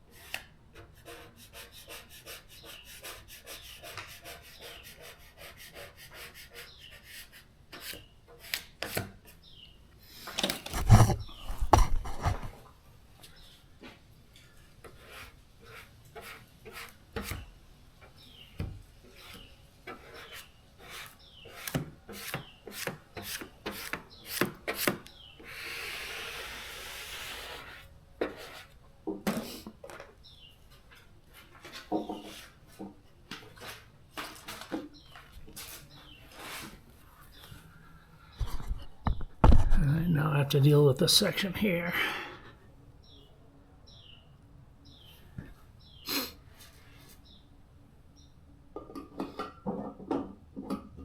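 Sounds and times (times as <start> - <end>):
vinyl graphic scraping and tapping: 10.7 - 12.6.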